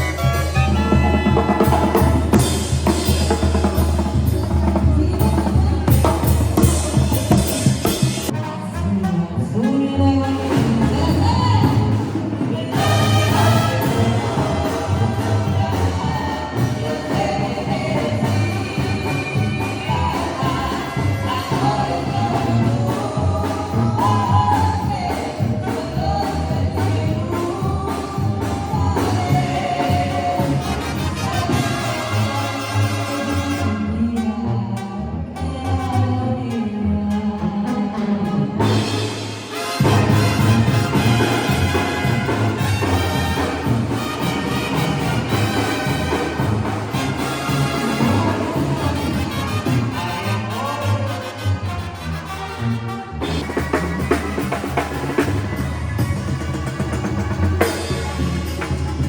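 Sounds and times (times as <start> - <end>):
banda music with singing: 0.0 - 59.0.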